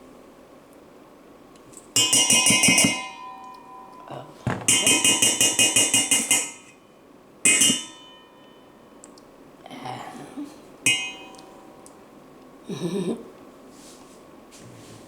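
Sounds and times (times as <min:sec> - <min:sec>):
metal spoon knocking on pan: 0:02.0 - 0:03.2, 0:04.5 - 0:06.7.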